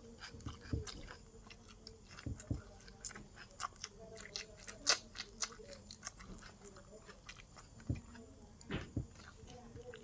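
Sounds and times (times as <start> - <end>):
person chewing: 0.0 - 10.0
soft low thumps: 7.8 - 9.3.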